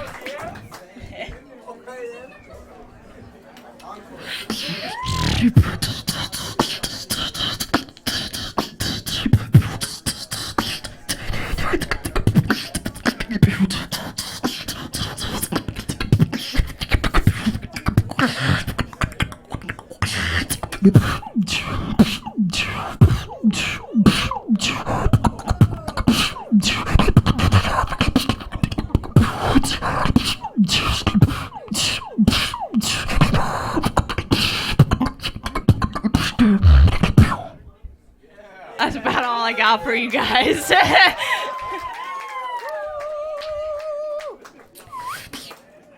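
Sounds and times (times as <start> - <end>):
person beatboxing: 4.2 - 37.6, 43.4 - 45.6.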